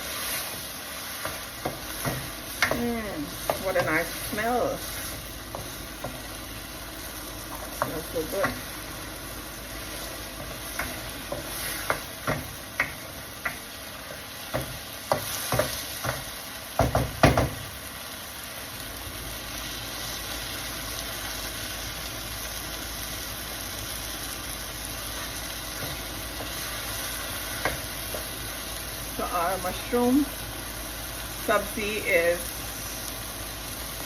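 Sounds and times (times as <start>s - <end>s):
gravy sizzling in oil: 0.0s - 34.0s
spatula scraping a frying pan: 9.8s - 13.6s.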